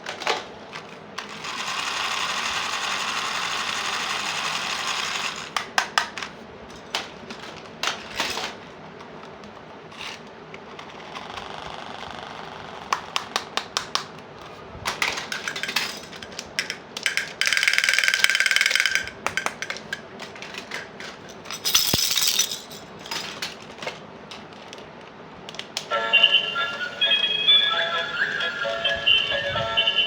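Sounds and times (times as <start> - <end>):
plastic toy pieces clicking: 14.9 - 22.5
short melody: 25.9 - 30.0.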